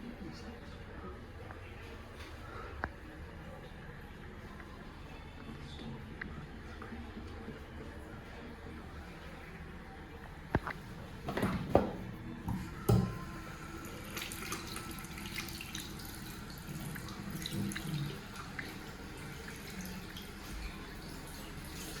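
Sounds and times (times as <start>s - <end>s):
tap water running into sink: 11.3s - 22.0s
small drips: 13.0s - 22.0s.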